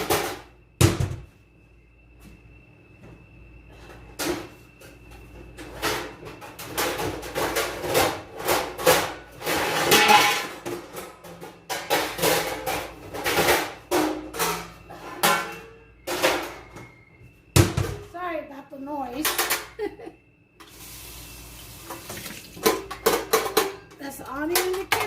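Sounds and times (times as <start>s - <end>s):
baking pans clattering and banging: 5.6s - 16.8s, 19.2s - 20.0s, 21.9s - 25.0s.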